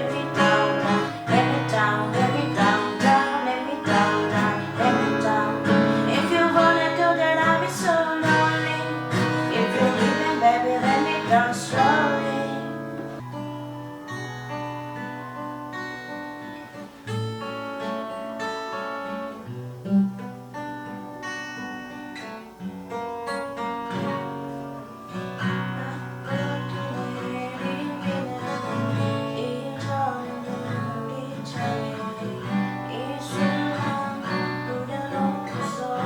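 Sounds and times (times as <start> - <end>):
person singing: 0.0 - 14.0, 25.0 - 36.0
acoustic guitar playing slow tune: 0.0 - 36.0.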